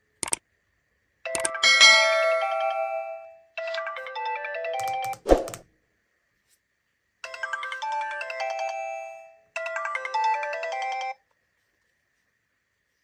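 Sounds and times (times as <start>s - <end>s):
phone ringtone chime: 1.3s - 5.2s, 7.3s - 11.2s.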